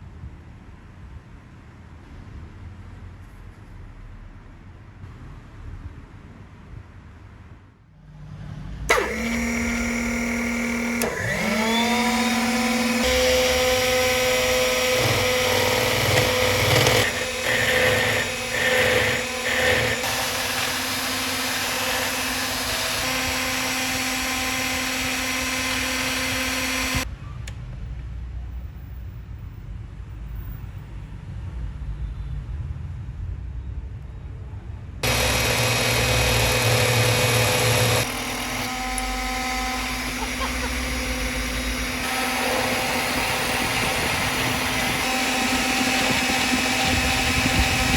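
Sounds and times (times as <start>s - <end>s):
small electric motor whining: 8.9s - 27.0s, 35.0s - 47.9s.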